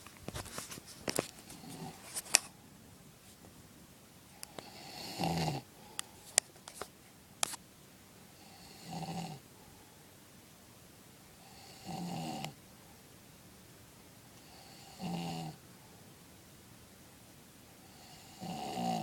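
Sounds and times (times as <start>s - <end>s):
man snoring: 1.6s - 2.0s, 4.6s - 5.7s, 8.4s - 9.4s, 11.4s - 12.6s, 14.4s - 15.6s, 17.9s - 19.0s.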